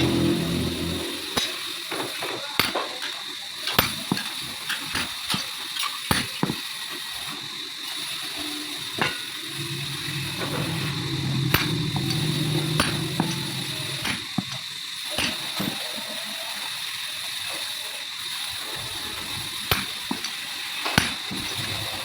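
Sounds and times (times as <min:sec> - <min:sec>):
faint steady high whine: 0:00.0 - 0:02.1, 0:08.0 - 0:14.8.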